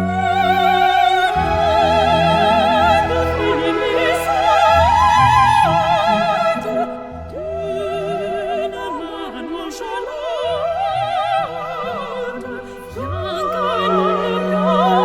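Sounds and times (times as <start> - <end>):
orchestral accompaniment: 0.0 - 15.0.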